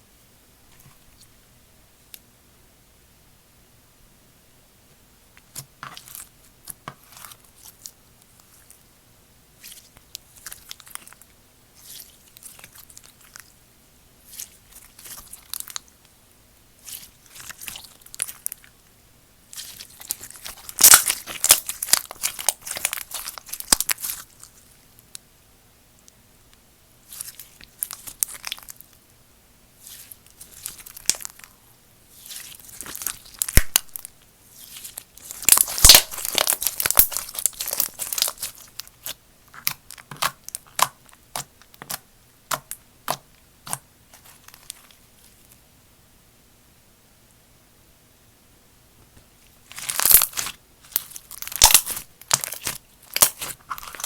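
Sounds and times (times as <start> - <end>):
slime popping and crunching: 19.6 - 24.4, 32.2 - 44.8, 49.7 - 54.0.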